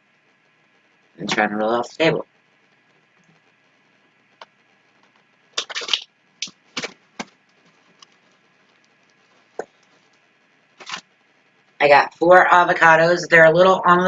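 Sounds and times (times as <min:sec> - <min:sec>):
grocery packaging crinkling: 0:05.6 - 0:08.2, 0:10.8 - 0:11.1.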